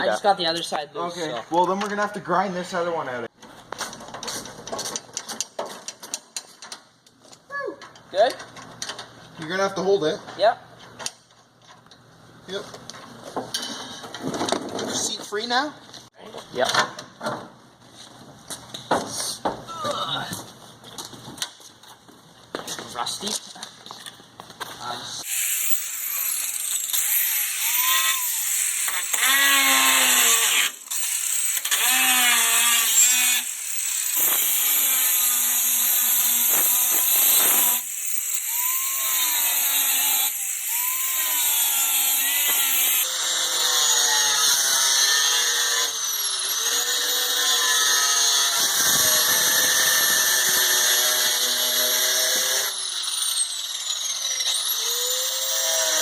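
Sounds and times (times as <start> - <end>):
angle grinder cutting metal: 25.2 - 56.0.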